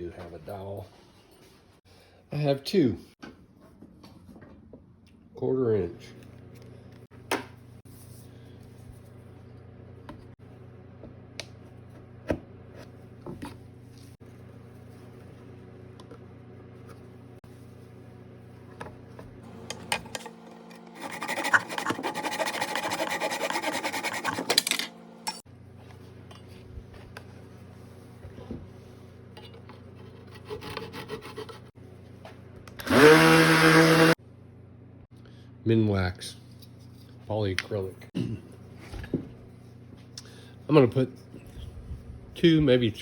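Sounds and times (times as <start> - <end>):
rasping scrape on wood: 20.8 - 24.6, 30.2 - 31.7
small power tool whine: 32.8 - 34.2.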